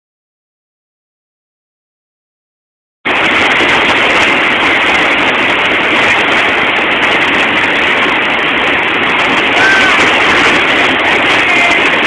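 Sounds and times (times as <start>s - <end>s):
white water rushing: 3.1s - 12.0s.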